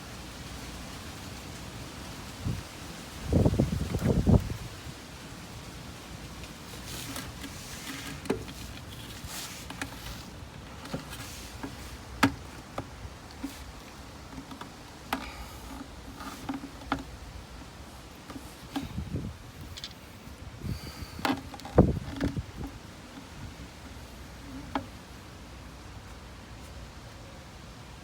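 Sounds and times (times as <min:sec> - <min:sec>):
low steady background noise: 0:00.0 - 0:28.0
pvc pipe fittings clicking: 0:10.8 - 0:19.0.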